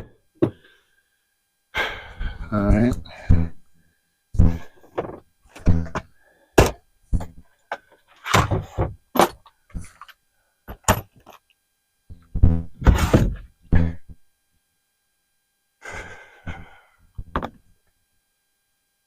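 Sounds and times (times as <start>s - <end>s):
objects thudding and knocking: 0.0s - 0.6s, 4.4s - 10.1s, 10.7s - 11.4s, 12.1s - 14.0s, 17.2s - 17.6s.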